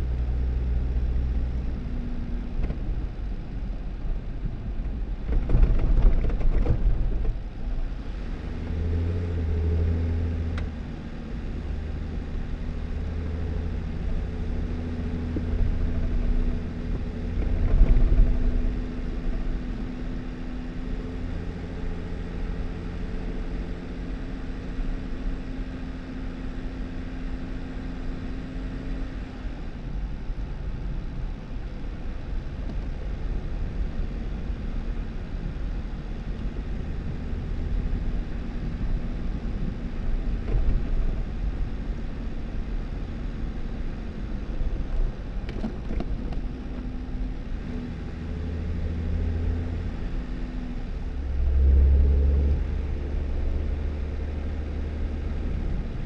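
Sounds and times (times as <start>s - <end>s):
vehicle engine and tyres rumbling: 0.0s - 56.0s.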